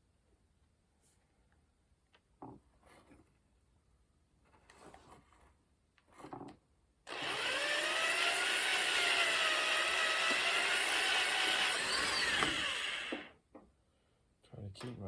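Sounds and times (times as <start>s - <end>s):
small electric motor whining: 7.1s - 13.3s.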